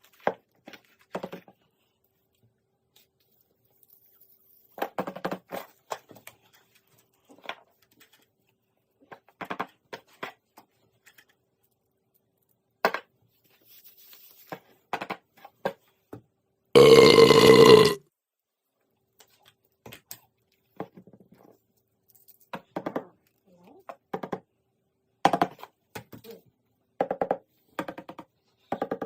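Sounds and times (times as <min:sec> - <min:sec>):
loud burp: 0:16.8 - 0:18.0.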